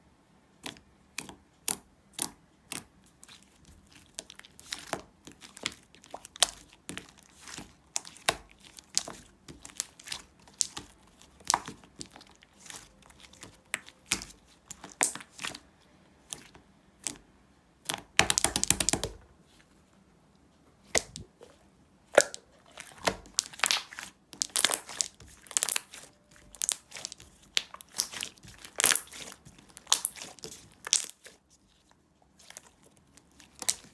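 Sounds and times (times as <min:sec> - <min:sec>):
slime clicking and popping: 0:17.8 - 0:19.2, 0:20.9 - 0:21.3, 0:22.1 - 0:31.2.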